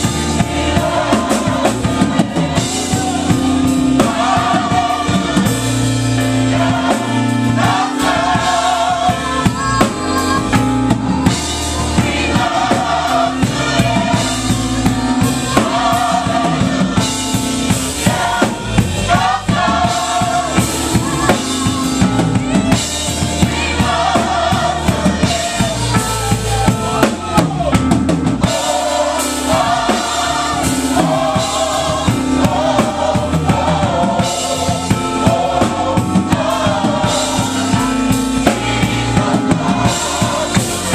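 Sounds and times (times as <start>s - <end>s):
drum kit: 0.0s - 40.9s
gospel choir singing: 0.0s - 40.9s.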